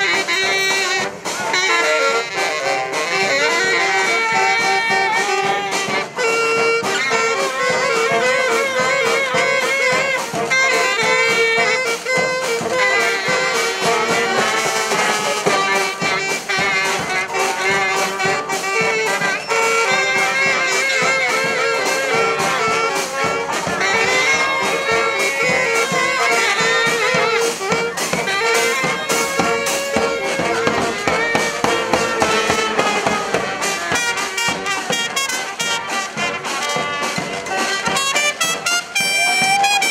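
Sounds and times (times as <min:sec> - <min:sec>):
brass horns playing melody: 0:00.0 - 0:39.9
drum strikes: 0:00.0 - 0:39.9.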